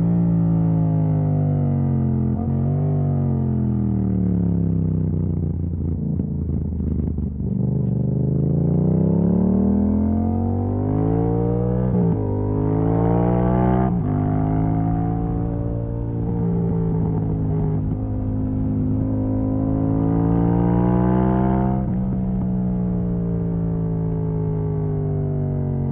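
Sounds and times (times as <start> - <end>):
motorcycle engine revving: 6.4 - 25.9.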